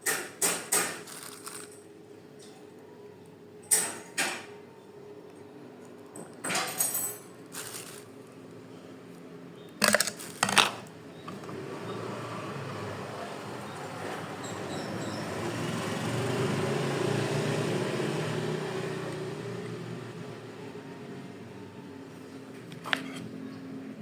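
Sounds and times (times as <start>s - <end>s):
metal parts clicking and knocking: 0.1s - 1.8s, 9.8s - 11.5s.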